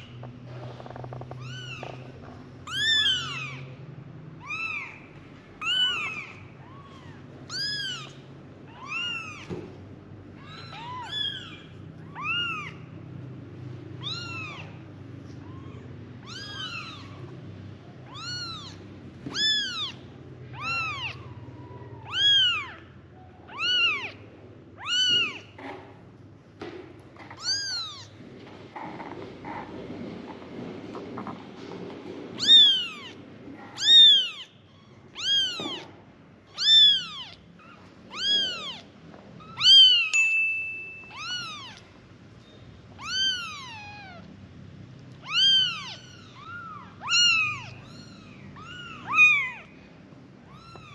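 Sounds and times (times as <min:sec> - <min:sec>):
kittens mewing: 0:00.0 - 0:03.8, 0:04.4 - 0:09.5, 0:10.3 - 0:12.9, 0:14.0 - 0:25.7, 0:27.2 - 0:28.1, 0:32.3 - 0:40.2, 0:41.1 - 0:42.0, 0:43.0 - 0:44.3, 0:45.1 - 0:49.8, 0:50.4 - 0:50.9.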